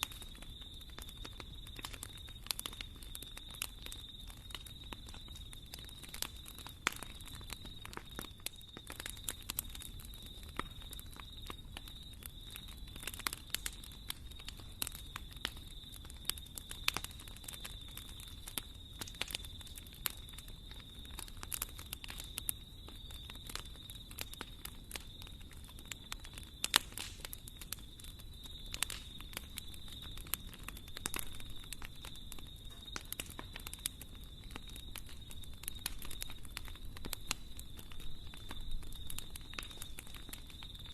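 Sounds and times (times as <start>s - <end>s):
wood fire crackling: 0.0s - 40.9s.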